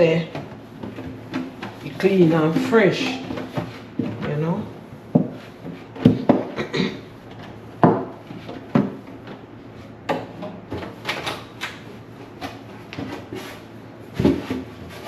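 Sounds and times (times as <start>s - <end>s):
rubbing and scraping: 12.3s - 15.0s.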